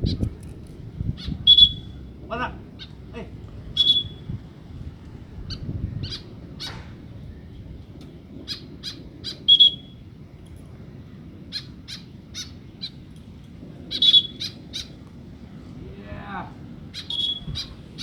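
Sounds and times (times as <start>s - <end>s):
bird giving harsh calls: 1.2s - 3.0s, 3.8s - 4.3s, 5.5s - 7.1s, 13.9s - 15.0s, 16.9s - 18.0s.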